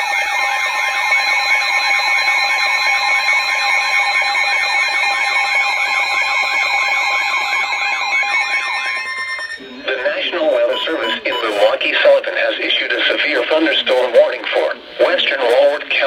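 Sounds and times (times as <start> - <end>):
warbling alarm tone: 0.0 - 12.8.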